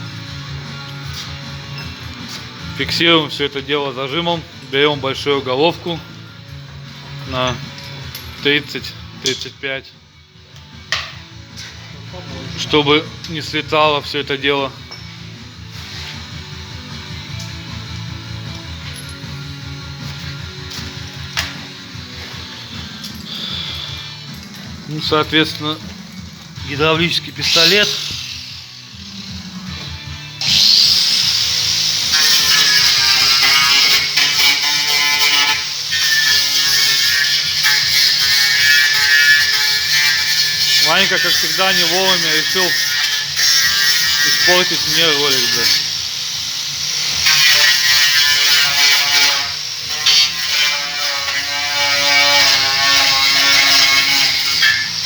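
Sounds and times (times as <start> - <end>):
background music: 0.0 - 55.0
pneumatic impact wrench running: 20.0 - 24.6, 27.2 - 55.0.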